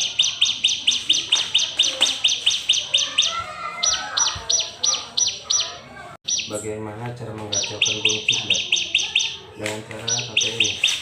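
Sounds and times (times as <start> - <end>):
bird calling in sharp chirps: 0.0 - 6.8, 7.4 - 11.0.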